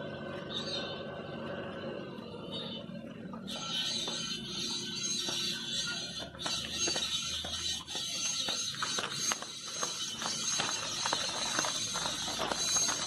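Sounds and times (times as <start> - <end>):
car wheel clicking and scraping: 3.3 - 13.0.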